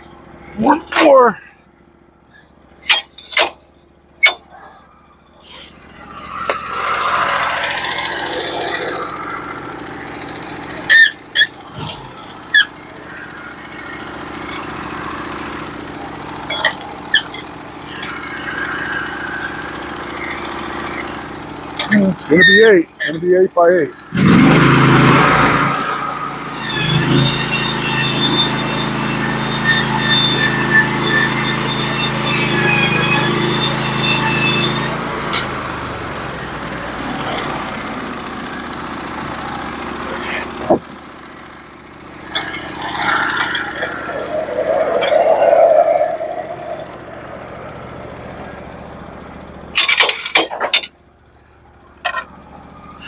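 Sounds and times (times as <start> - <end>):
sawmill engine running: 0.0 - 53.0
band saw blade whine: 5.4 - 50.9
sharp knocks and clanks: 49.8 - 50.9.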